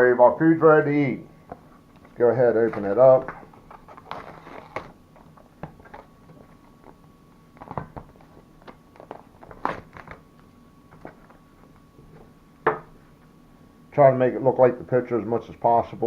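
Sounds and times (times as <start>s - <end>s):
plastic film crinkling: 1.9s - 11.8s.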